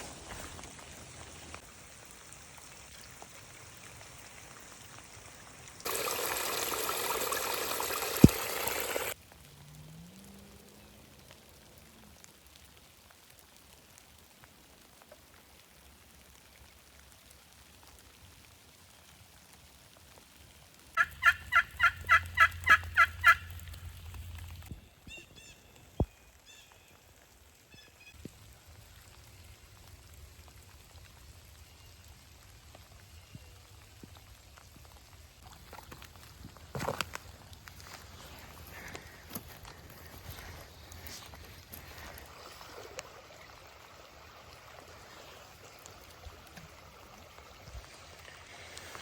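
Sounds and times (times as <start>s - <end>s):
light rain pattering: 0.0s - 49.0s
turkey yelps: 21.0s - 23.5s.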